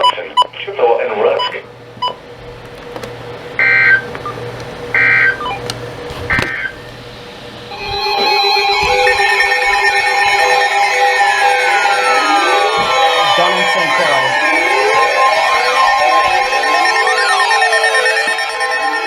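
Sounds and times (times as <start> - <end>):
warbling data bursts: 3.6 - 5.7, 6.5 - 19.0
music with sustained tones: 6.7 - 19.0.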